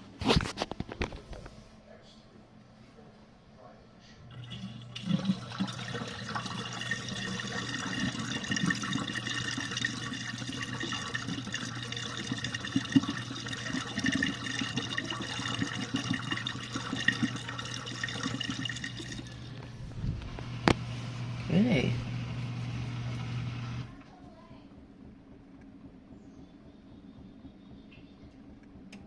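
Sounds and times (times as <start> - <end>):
dishwasher pump hum: 4.2 - 24.2.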